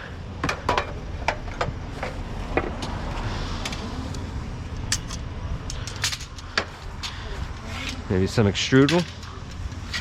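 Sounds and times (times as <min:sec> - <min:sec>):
steady low rumble: 0:00.0 - 0:10.0
scrap metal clinks and knocks: 0:04.8 - 0:08.1, 0:08.8 - 0:10.0.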